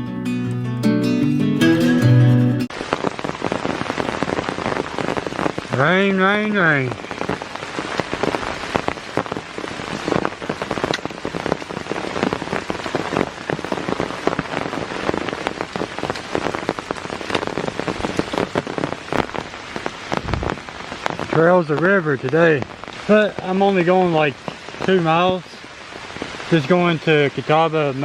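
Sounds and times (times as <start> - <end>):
pouring rain: 1.6 - 28.0
raindrops ticking: 2.7 - 28.0.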